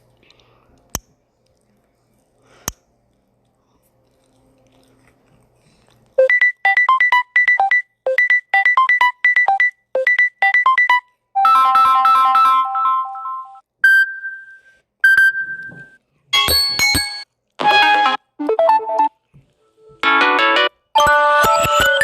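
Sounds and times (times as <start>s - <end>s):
electronic ringtone melody: 6.2s - 19.2s, 20.0s - 22.0s.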